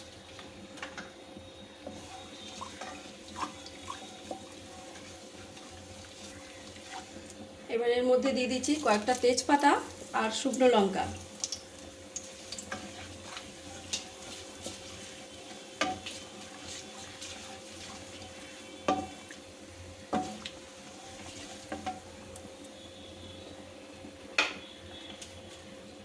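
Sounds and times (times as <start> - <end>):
spices sizzling in oil: 0.0 - 26.0
spatula knocking against pan: 18.9 - 19.2.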